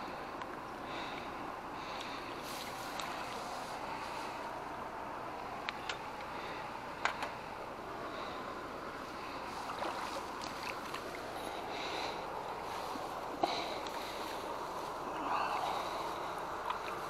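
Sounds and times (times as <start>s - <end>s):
wind: 0.0s - 17.0s
water washing: 9.1s - 17.0s.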